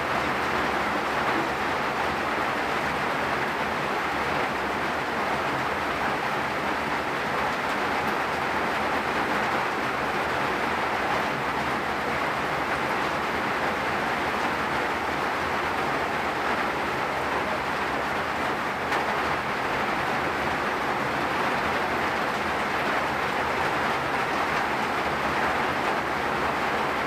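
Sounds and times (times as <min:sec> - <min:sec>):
heavy rain falling: 0:00.0 - 0:27.0.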